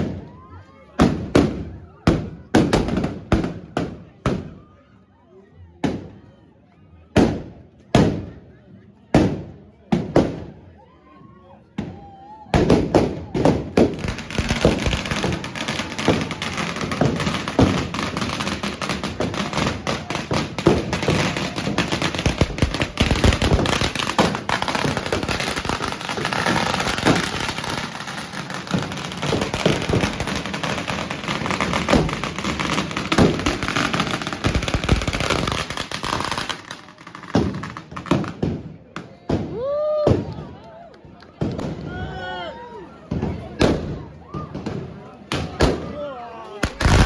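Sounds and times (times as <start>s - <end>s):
firecrackers banging: 12.5s - 39.5s, 46.6s - 47.0s.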